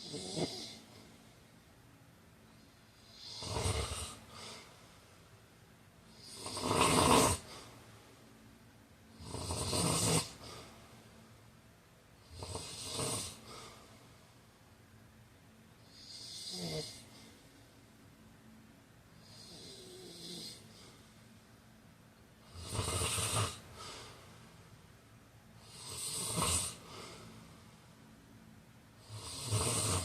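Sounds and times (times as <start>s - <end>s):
man snoring: 0.0s - 1.0s, 3.0s - 4.7s, 6.1s - 7.7s, 9.1s - 10.7s, 12.2s - 13.8s, 15.8s - 17.3s, 19.2s - 20.9s, 22.4s - 24.1s, 25.6s - 27.3s, 29.0s - 30.0s.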